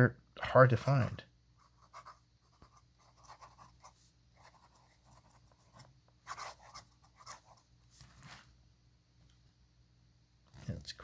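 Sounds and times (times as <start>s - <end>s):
pen nib scratching paper: 1.6s - 7.7s.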